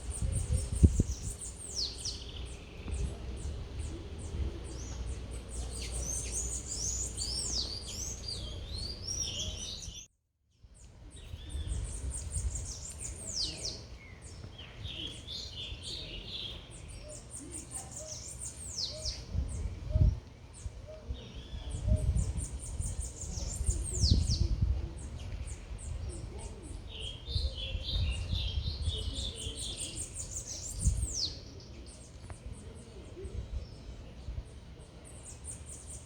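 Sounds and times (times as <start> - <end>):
low city rumble: 0.0 - 10.1, 10.8 - 36.0
small birds chirping: 0.0 - 36.0.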